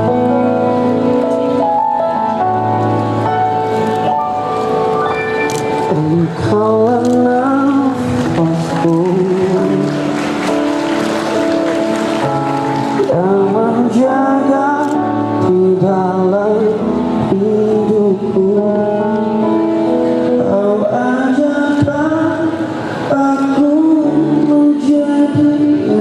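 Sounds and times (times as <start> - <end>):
sustained musical accompaniment: 0.0 - 26.0
person singing long sliding notes: 4.9 - 10.6, 12.3 - 19.4, 20.3 - 26.0.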